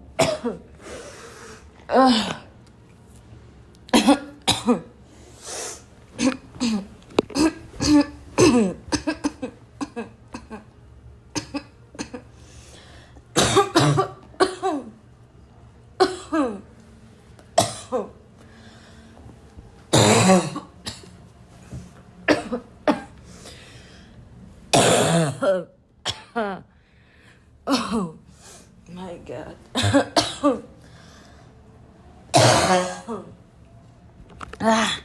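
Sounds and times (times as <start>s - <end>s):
person coughing loudly: 0.2s - 0.7s, 3.9s - 4.9s, 6.2s - 10.6s, 13.4s - 14.9s, 16.0s - 16.6s, 17.6s - 18.2s, 19.9s - 21.1s, 22.3s - 23.2s, 24.7s - 26.5s, 27.7s - 28.2s, 29.8s - 30.7s, 32.3s - 33.4s.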